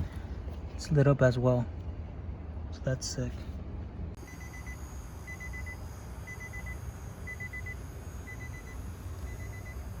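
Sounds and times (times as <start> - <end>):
electronic warning chime beeps: 4.2 - 10.0.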